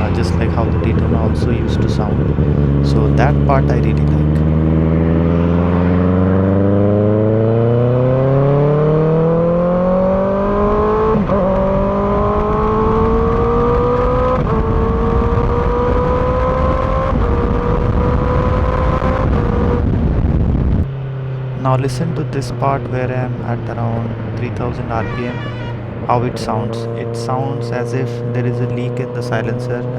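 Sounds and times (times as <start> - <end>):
wind noise: 0.0 - 21.0
motorcycle engine accelerating: 0.0 - 29.9.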